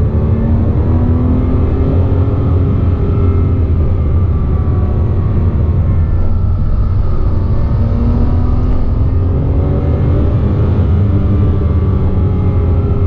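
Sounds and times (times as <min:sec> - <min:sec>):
car engine running from inside cabin: 0:00.0 - 0:13.0
high-pitched whistling whine: 0:02.8 - 0:13.0.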